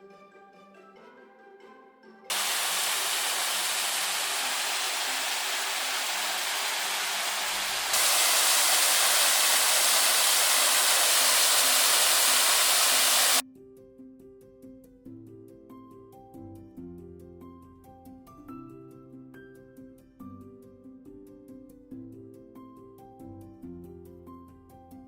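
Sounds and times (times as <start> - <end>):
waterfall rushing water: 2.3 - 13.4.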